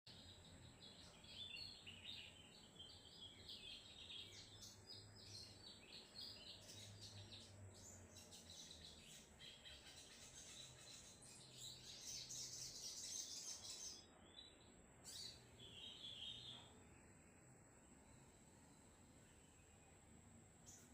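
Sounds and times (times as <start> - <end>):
bird chirping and trilling: 0.1 - 16.7.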